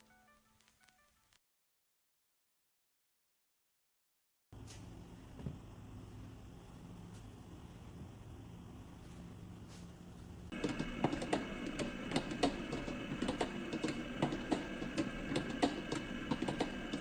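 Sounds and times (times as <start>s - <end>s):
kitchen machine whining: 10.5s - 17.0s
rapid clicking and rattling: 10.5s - 17.0s.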